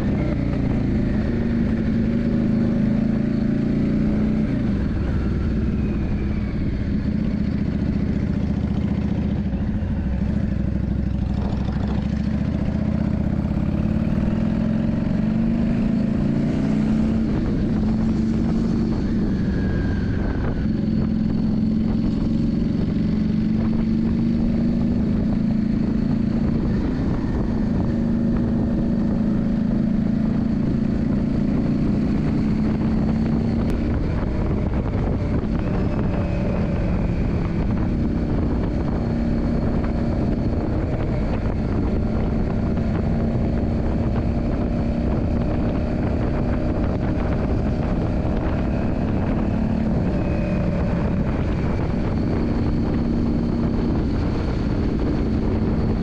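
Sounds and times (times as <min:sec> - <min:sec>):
motorcycle engine running: 0:00.0 - 0:56.0
steady rushing noise: 0:00.0 - 0:56.0.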